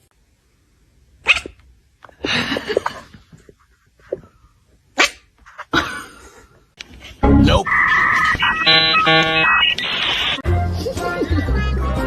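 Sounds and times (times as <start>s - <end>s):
pet animal vocal sounds: 1.2s - 1.6s.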